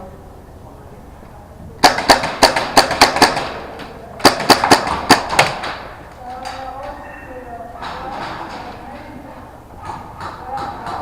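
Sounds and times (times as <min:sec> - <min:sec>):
airsoft gun rapid shots: 0:01.8 - 0:05.8.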